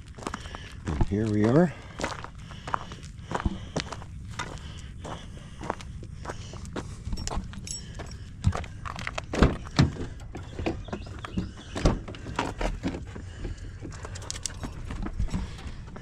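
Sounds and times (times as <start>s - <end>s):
footsteps: 0.0s - 16.0s
knocks and thuds: 9.3s - 13.5s.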